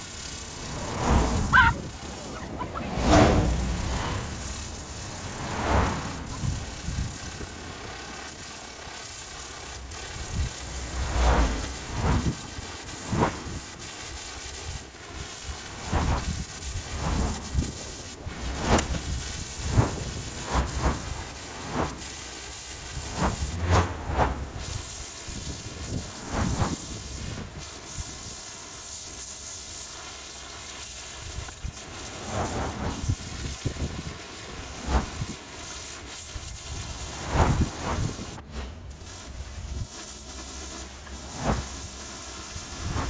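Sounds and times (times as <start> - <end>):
pressure washer jet hissing: 0.0 - 27.3, 30.8 - 43.0
spray splattering: 0.6 - 7.4.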